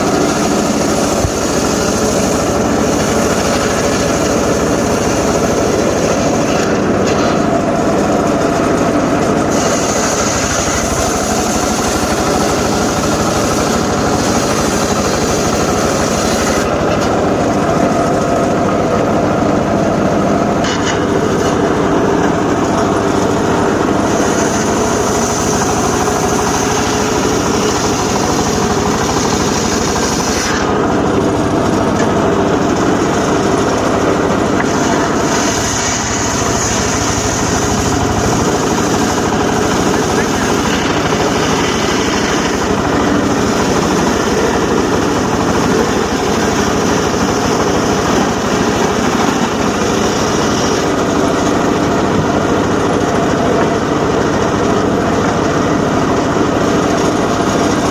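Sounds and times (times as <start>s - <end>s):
engine-driven circular saw running: 0.0s - 57.9s
saw blade cutting wood hiss: 9.4s - 16.8s, 24.0s - 30.8s, 34.6s - 51.0s.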